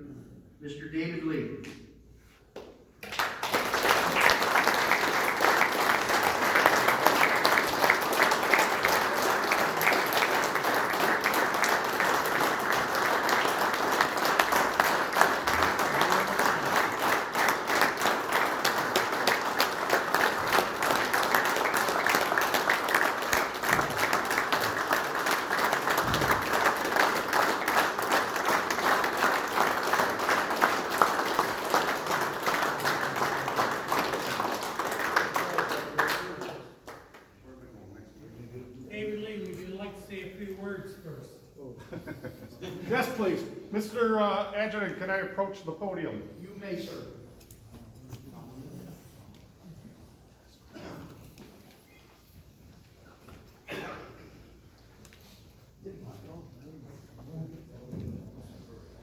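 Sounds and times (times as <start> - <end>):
large audience applauding: 3.0 - 37.3.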